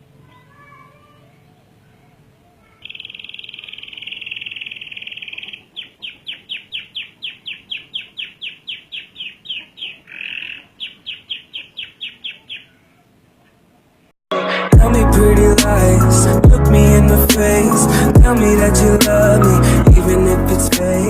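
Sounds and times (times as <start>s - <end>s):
canary singing: 2.6s - 13.6s.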